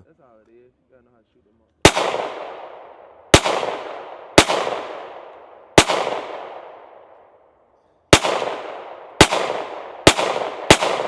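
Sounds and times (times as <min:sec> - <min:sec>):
pistol shots with echo: 0:01.8 - 0:07.4, 0:08.1 - 0:11.0.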